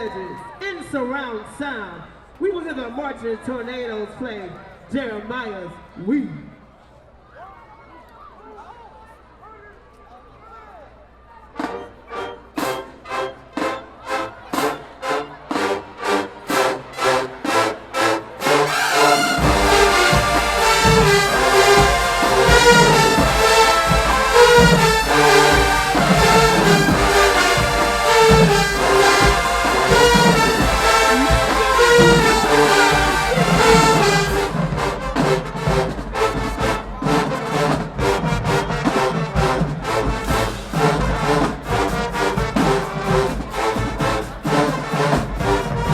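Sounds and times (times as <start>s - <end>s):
marching band brass playing: 11.6s - 45.9s
sousaphones: 11.6s - 45.9s
drums: 14.6s - 45.9s.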